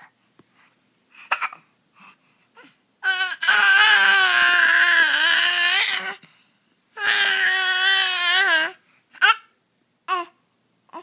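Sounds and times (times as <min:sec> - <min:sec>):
baby crying: 0:02.6 - 0:06.2, 0:07.0 - 0:09.5.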